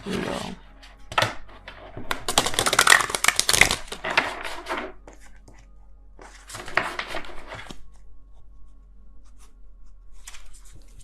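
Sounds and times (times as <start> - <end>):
cards being shuffled: 10.2 - 11.0.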